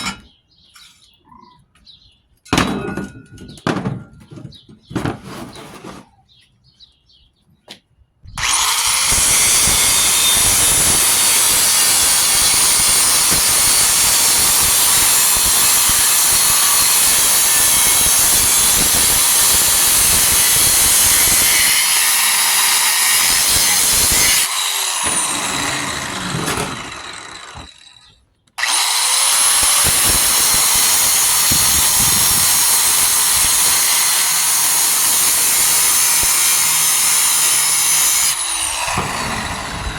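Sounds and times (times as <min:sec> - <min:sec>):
power tool cutting steel: 0:08.4 - 0:39.9.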